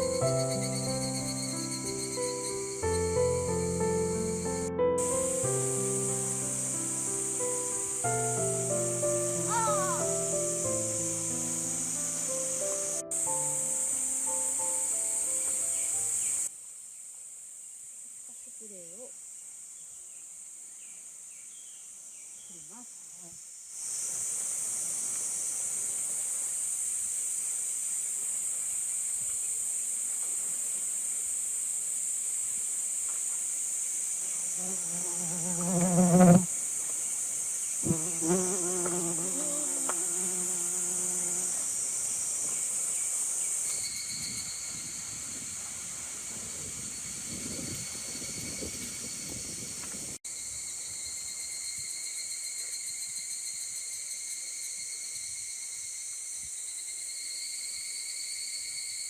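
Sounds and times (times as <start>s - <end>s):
insects buzzing: 0.0s - 59.0s.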